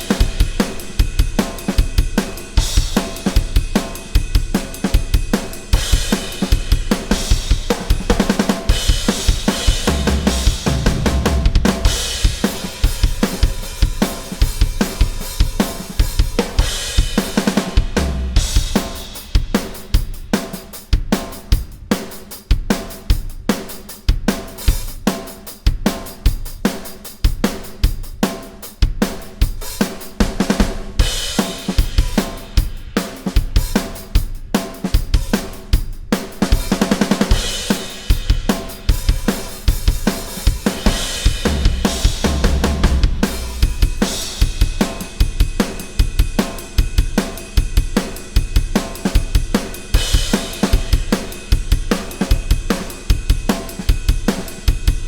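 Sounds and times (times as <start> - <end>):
drum kit rock beat: 0.0 - 55.0
cymbal crashes: 40.8 - 45.4.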